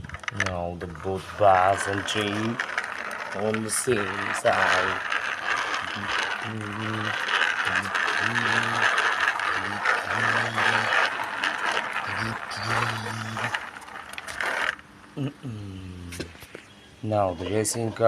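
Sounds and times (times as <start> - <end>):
toy vehicles rattling and clicking: 0.0 - 15.3
low held vocal sounds: 5.8 - 8.9, 9.6 - 11.0, 12.1 - 13.6, 15.2 - 16.3.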